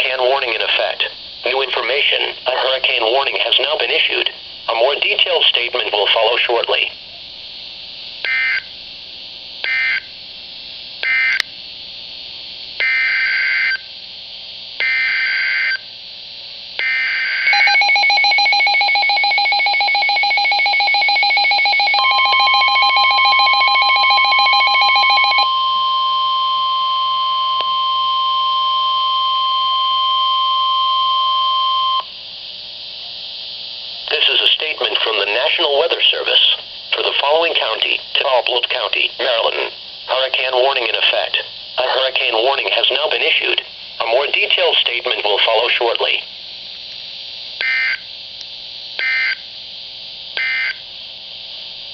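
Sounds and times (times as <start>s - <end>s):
steady warning alarm tone: 8.2s - 8.7s, 9.6s - 10.1s, 11.0s - 11.5s, 12.8s - 13.9s, 14.8s - 15.9s, 16.8s - 32.1s, 47.6s - 48.1s, 49.0s - 49.4s, 50.4s - 50.8s
buzzing data bursts: 16.8s - 27.3s.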